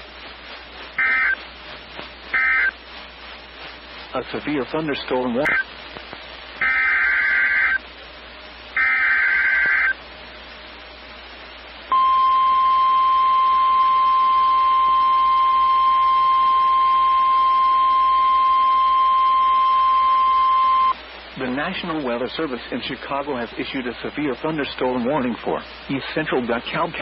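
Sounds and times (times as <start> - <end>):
warbling digital data tones: 1.0 - 1.4, 2.3 - 2.8, 5.4 - 5.7, 6.6 - 7.8, 8.8 - 10.0.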